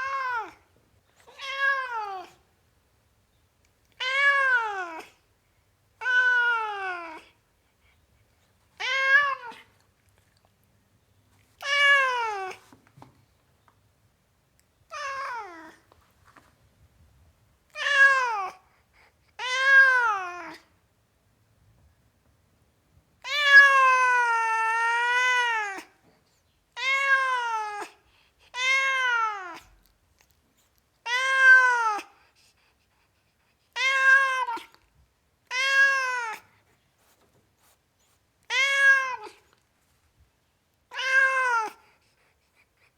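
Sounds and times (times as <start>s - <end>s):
cat meowing: 0.0s - 0.6s, 1.2s - 2.4s, 4.0s - 5.1s, 6.0s - 7.3s, 8.8s - 9.7s, 11.6s - 12.6s, 14.9s - 15.8s, 17.7s - 18.6s, 19.4s - 20.6s, 23.2s - 25.9s, 26.8s - 29.7s, 31.0s - 32.1s, 33.7s - 34.8s, 35.4s - 36.5s, 38.4s - 39.4s, 40.9s - 41.8s.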